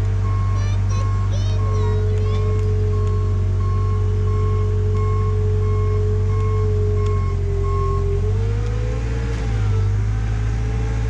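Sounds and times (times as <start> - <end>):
heavy machine engine running: 0.0 - 11.0
backup alarm beeping: 0.2 - 8.2.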